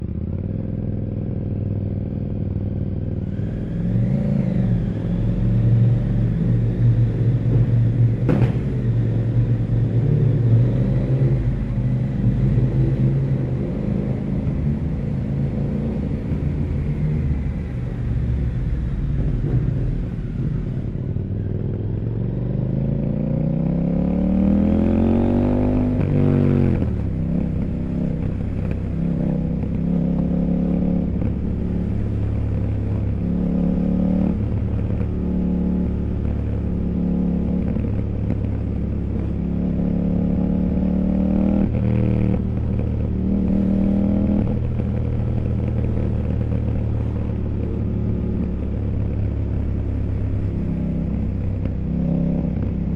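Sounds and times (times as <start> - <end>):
motorcycle engine revving: 0.0 - 52.9.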